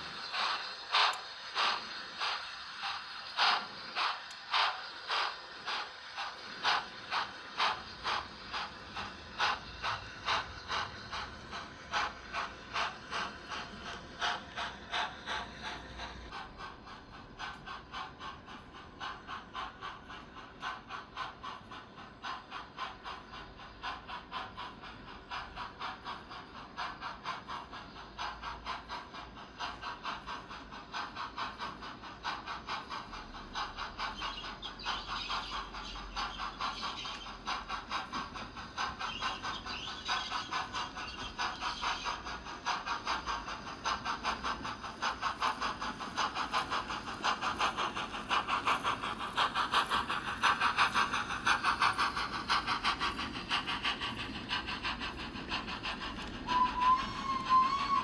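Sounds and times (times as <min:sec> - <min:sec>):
model steam locomotive chuffs: 0:00.0 - 0:58.0.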